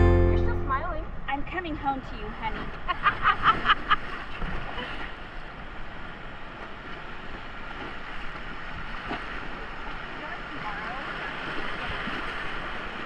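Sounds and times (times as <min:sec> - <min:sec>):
creek water rushing: 0:04.0 - 0:13.0.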